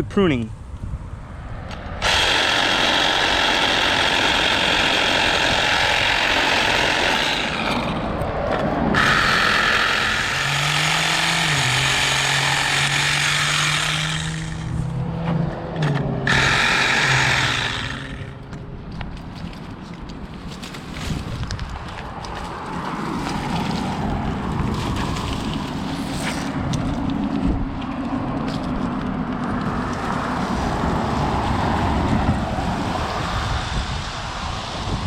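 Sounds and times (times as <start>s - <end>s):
power saw cutting wood: 2.0s - 8.2s, 8.9s - 15.0s, 16.2s - 18.5s.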